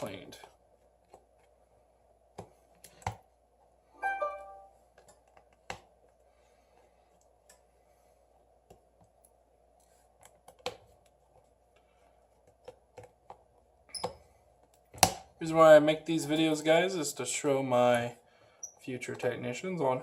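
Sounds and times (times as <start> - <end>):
short ringing note: 4.0 - 4.7.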